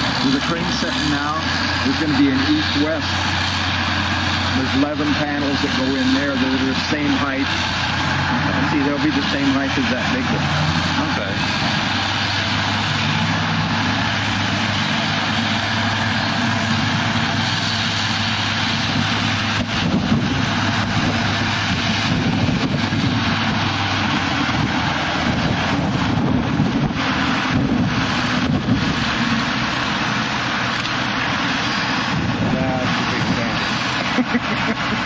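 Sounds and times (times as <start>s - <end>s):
engine running: 0.0s - 35.0s
wind on microphone: 18.8s - 29.4s, 32.0s - 33.8s.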